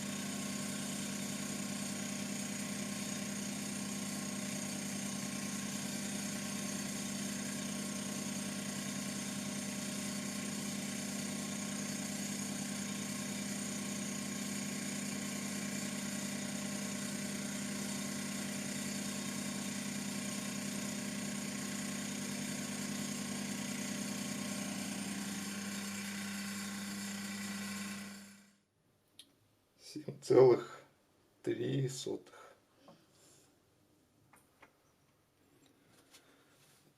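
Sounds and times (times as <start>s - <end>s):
milling machine motor humming: 0.0s - 28.5s.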